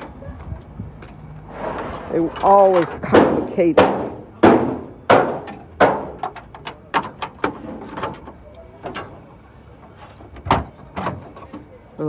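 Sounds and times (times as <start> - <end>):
metal bangs and knocks: 2.2 - 9.2.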